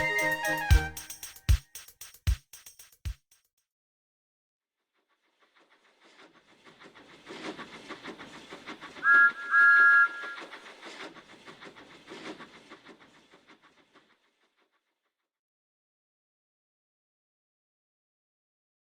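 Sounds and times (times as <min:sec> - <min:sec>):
steam whistle blasts: 0:00.0 - 0:01.4, 0:09.0 - 0:10.5
steam locomotive wheels clattering: 0:06.0 - 0:14.2.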